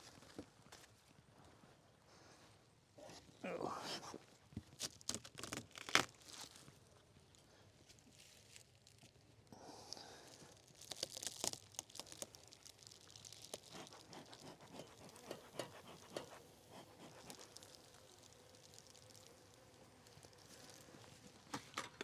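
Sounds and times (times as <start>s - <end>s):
crackles and clicks at beehive: 4.5s - 22.0s.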